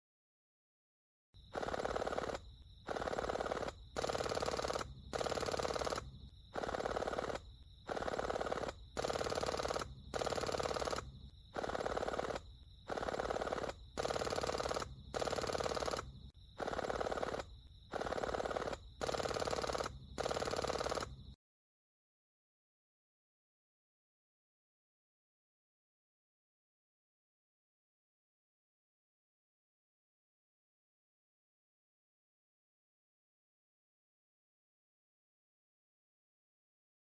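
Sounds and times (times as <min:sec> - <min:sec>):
airsoft gun full-auto bursts: 0:01.5 - 0:21.3.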